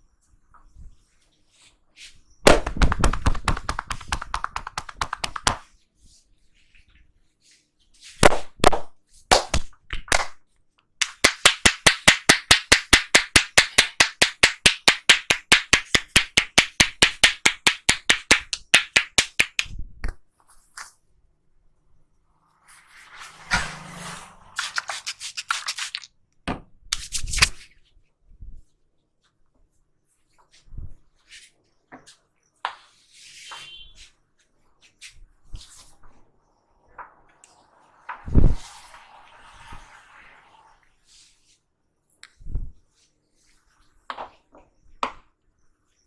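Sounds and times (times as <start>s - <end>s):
crisp hand claps: 2.5s - 5.7s, 8.2s - 10.4s, 11.0s - 19.8s
hands slapping on a head: 2.5s - 5.7s, 8.2s - 10.4s, 11.0s - 21.0s, 24.6s - 27.6s.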